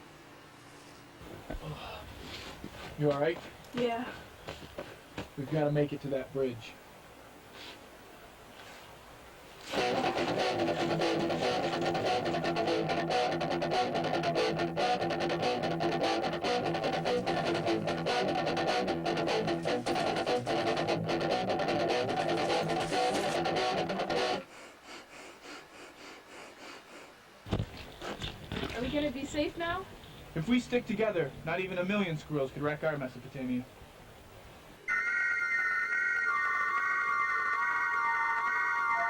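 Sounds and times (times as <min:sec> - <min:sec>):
strummed guitar music: 0:09.7 - 0:24.4.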